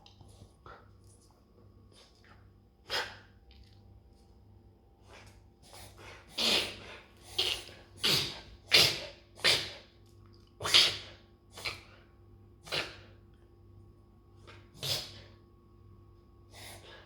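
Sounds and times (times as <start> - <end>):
dog reverse sneezing: 5.7 - 9.8, 14.8 - 15.3.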